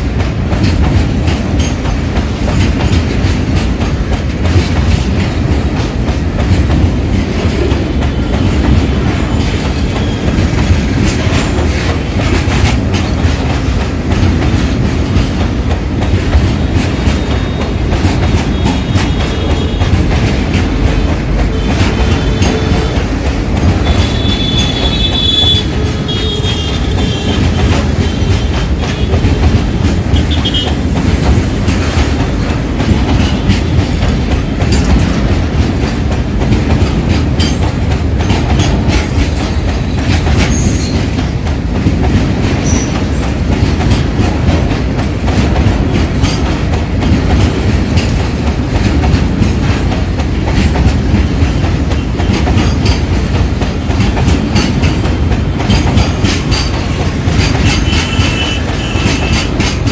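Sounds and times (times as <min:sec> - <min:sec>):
freight train rumbling past: 0:00.0 - 0:59.9
wheels clicking over rail joints: 0:00.0 - 0:59.9
high wheel squeal: 0:40.5 - 0:41.2.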